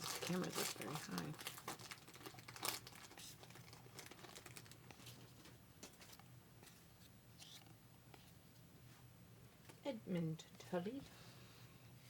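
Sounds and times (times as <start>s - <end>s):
trading cards rustling: 0.0s - 6.2s.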